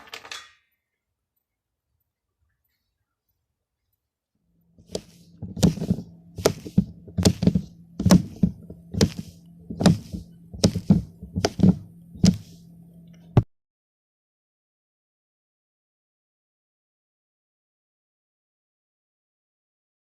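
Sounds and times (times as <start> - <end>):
faint steady hum: 0.6 - 13.4.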